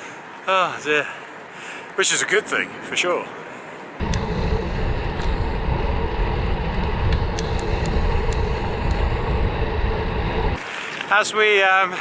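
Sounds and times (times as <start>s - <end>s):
wind buffeting microphone: 4.0s - 10.7s
bicycle tyre noise: 4.0s - 11.1s.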